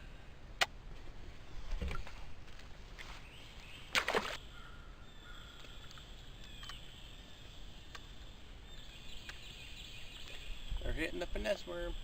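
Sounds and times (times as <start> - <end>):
birds calling faintly: 0.0 - 12.0
water splash: 3.9 - 4.4.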